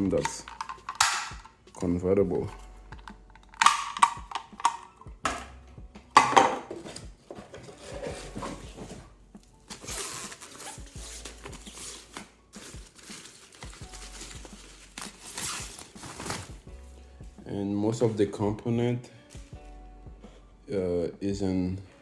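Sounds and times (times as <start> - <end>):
plastic parts clattering: 0.0 - 2.6, 3.3 - 5.5, 6.2 - 9.1, 9.7 - 16.6
packaging rustling: 0.0 - 2.7, 6.7 - 16.7.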